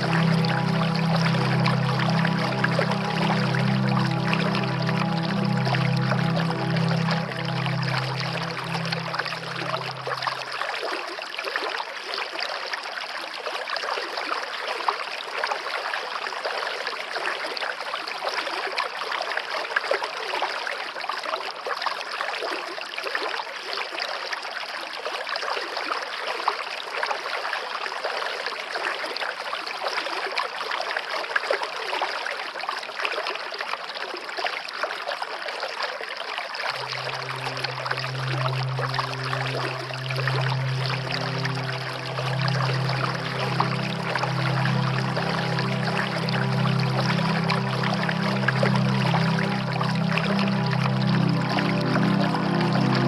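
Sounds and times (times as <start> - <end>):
low sustained music tones: 0.0 - 11.4, 36.7 - 53.0
stream water flowing: 0.0 - 53.0.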